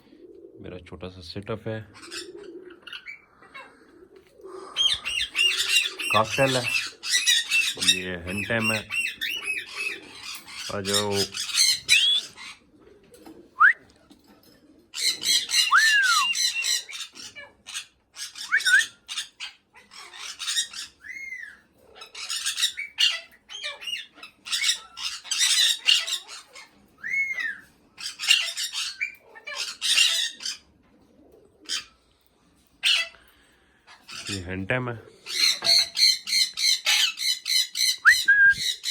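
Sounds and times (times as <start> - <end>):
parrot squawks: 4.6 - 12.6, 15.0 - 30.7, 32.8 - 33.3, 35.2 - 38.9
parrot whistled notes: 15.7 - 16.6, 18.5 - 19.0.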